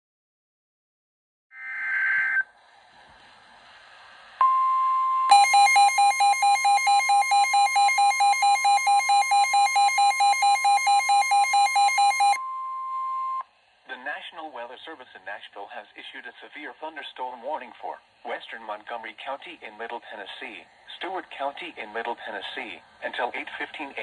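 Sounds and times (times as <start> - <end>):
pulsing electronic alarm beeping: 4.4 - 13.4
steady warning alarm tone: 4.4 - 13.4
digital data tones: 5.3 - 13.4.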